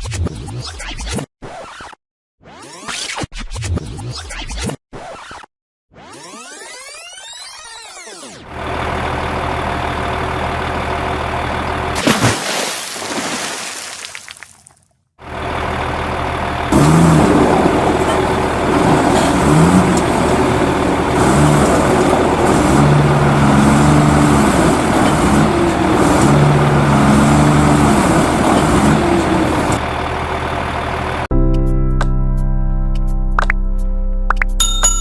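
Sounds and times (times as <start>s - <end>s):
diesel engine revving: 8.5s - 12.2s, 15.2s - 31.3s.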